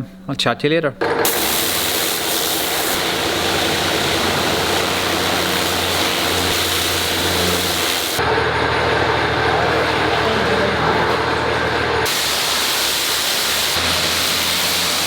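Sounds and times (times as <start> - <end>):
tractor engine droning: 1.0 - 15.0
pressure washer water jet hissing: 1.2 - 8.2, 12.0 - 15.0.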